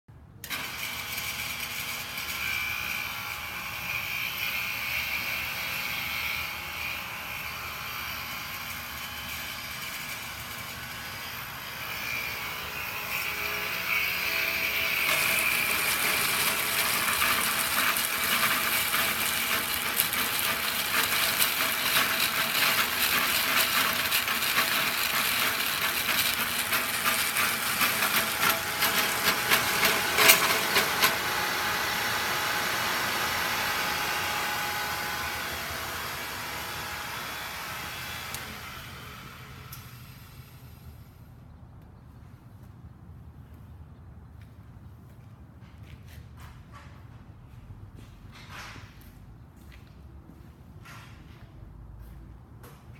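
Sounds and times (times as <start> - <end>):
grinder whining and grinding: 0.4 - 41.0.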